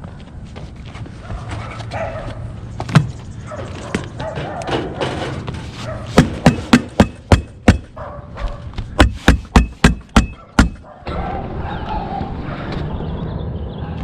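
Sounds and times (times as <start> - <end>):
hammer blows: 6.2 - 8.0, 9.0 - 10.9.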